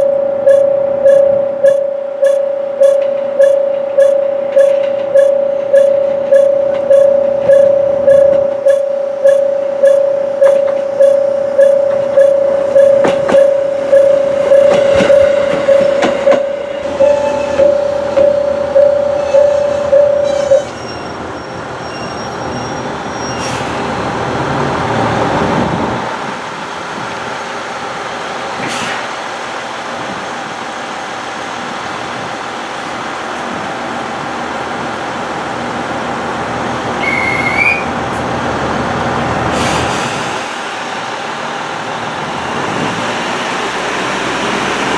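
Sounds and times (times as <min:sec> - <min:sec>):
level-crossing warning bell: 0:00.0 - 0:22.2
train wheels clacking: 0:00.5 - 0:23.9.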